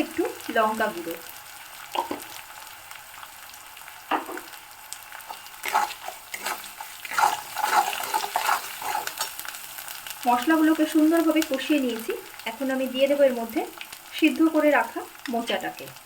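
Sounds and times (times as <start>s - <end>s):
spice paste sizzling in oil: 0.0s - 16.0s
spatula scraping a pan: 5.3s - 9.5s.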